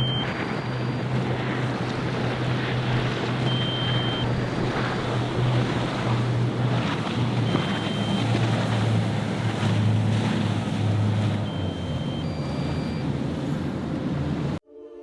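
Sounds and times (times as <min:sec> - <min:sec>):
boat engine drone: 0:00.0 - 0:14.6
rough surf: 0:00.0 - 0:14.6
wind buffeting microphone: 0:00.0 - 0:14.6.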